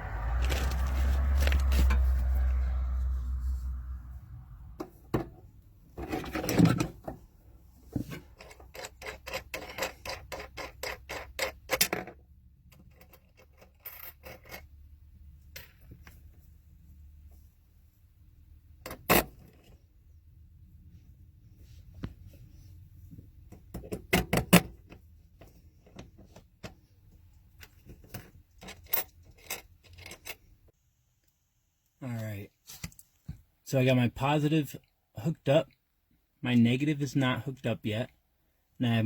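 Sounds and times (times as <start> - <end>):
scrape: 0.3 - 4.0.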